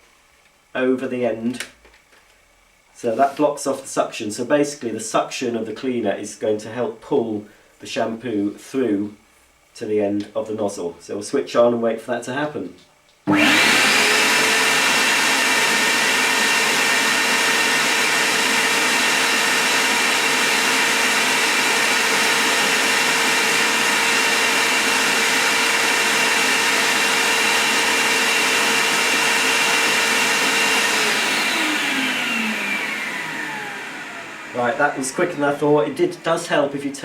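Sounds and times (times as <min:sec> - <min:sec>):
vacuum motor whining: 0:13.3 - 0:37.0.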